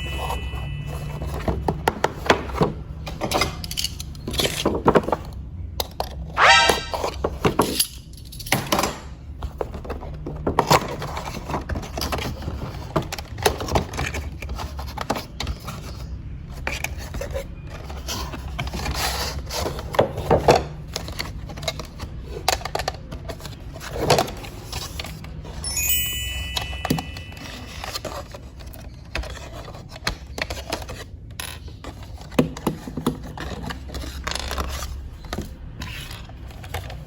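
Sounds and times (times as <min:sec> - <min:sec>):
plastic toy clicking and clattering: 0:16.7 - 0:25.4
short electronic beep: 0:25.7 - 0:27.8.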